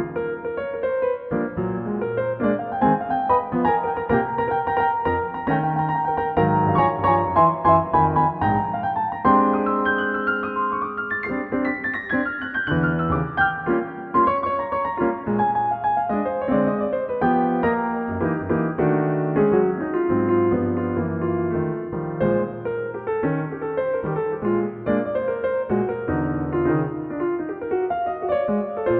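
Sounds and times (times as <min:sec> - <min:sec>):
solo jazz piano: 0:00.0 - 0:28.9.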